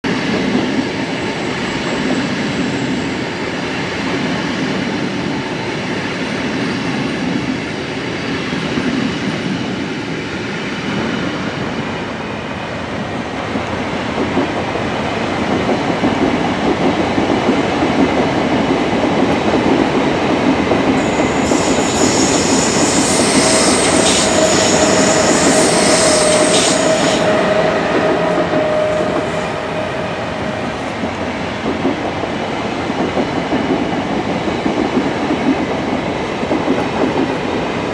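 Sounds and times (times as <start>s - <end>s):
train wheels rumbling on track: 0.0s - 37.9s
high-pitched wheel squeal: 21.0s - 31.1s.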